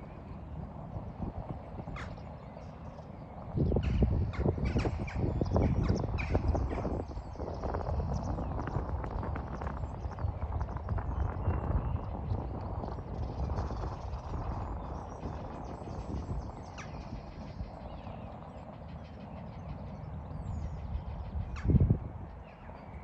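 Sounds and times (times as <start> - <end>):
steady low rumble: 0.0 - 23.0
wild birds calling: 1.8 - 8.7, 13.5 - 23.0.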